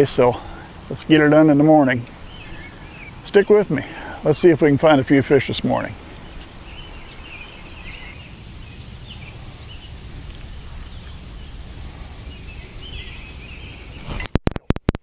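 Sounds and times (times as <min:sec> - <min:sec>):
bird chirps: 0:06.2 - 0:14.3
insect drone: 0:08.1 - 0:14.3
low rumble: 0:08.2 - 0:14.1.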